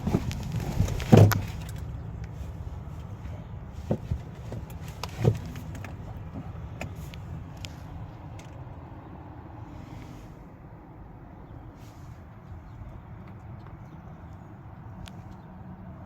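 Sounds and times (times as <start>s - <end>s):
knocks and clicks handling car parts: 0.0s - 8.7s
steady low rumble: 0.0s - 16.0s.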